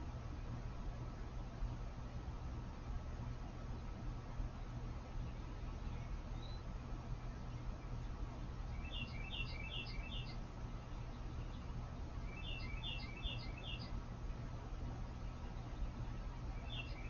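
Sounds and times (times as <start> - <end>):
steady low hum: 0.0 - 17.0
songbird chirping: 3.4 - 17.0.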